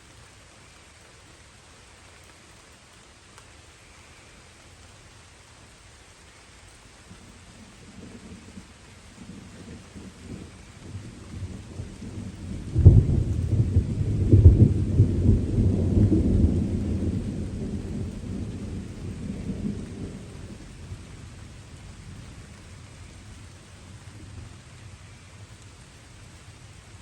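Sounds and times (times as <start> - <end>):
light rain hissing: 0.0 - 27.0
thunder rumbling: 7.5 - 25.2.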